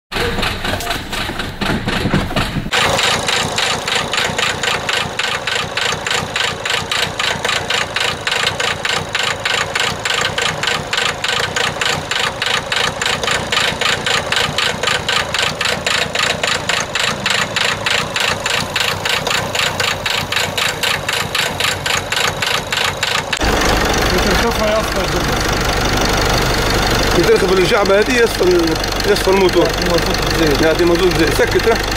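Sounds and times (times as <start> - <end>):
diesel engine clattering: 0.1 - 31.9.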